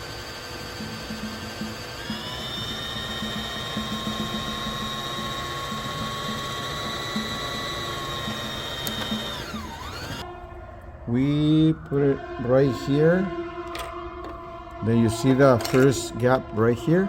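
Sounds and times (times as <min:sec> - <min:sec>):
sewing machine motor running: 0:00.0 - 0:10.2.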